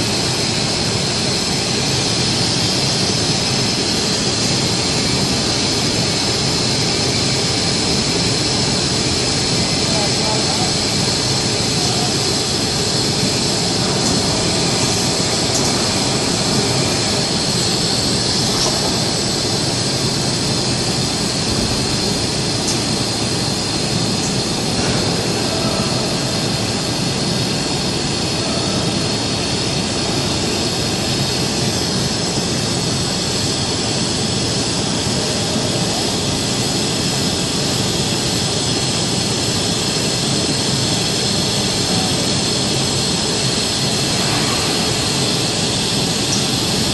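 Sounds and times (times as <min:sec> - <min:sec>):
workshop machinery hiss and rumble: 0:00.0 - 0:46.9.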